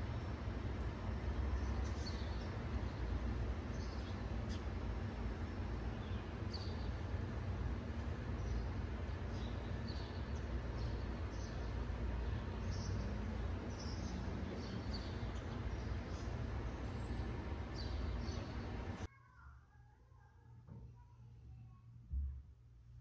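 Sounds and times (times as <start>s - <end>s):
steady background hiss: 0.0s - 19.1s
small birds chirping: 1.2s - 19.1s.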